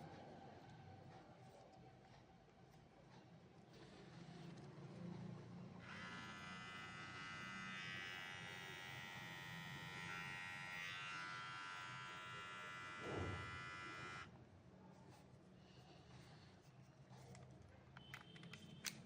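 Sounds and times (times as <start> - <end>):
beard trimmer buzzing: 5.8 - 14.3
thump: 13.0 - 13.4.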